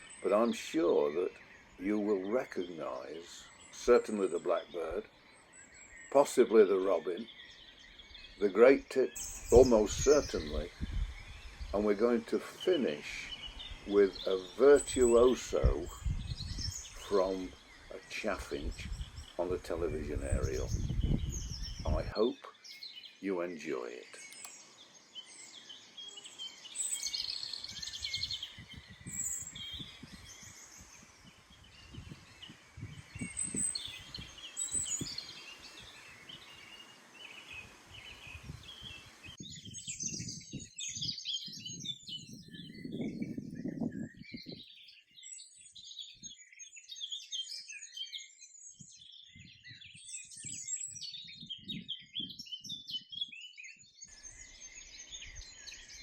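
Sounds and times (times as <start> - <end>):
background hiss: 0.0 - 39.4
songbirds singing: 0.0 - 56.0.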